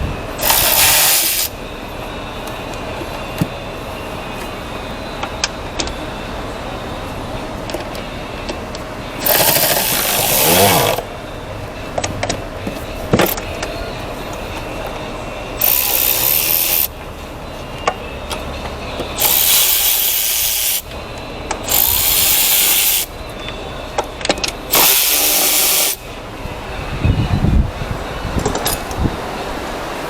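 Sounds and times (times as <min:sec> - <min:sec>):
power tool hissing bursts: 0:00.4 - 0:01.6, 0:09.2 - 0:11.0, 0:19.2 - 0:20.9, 0:21.7 - 0:23.1, 0:24.7 - 0:26.0.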